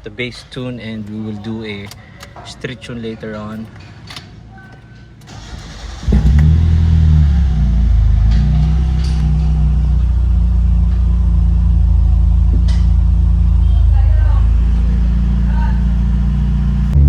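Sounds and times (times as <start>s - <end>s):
car engine starting and idling: 5.2s - 17.0s.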